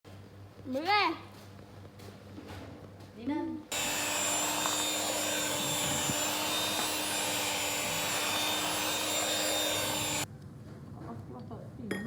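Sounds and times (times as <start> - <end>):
small electric motor whirring: 3.7 - 10.3.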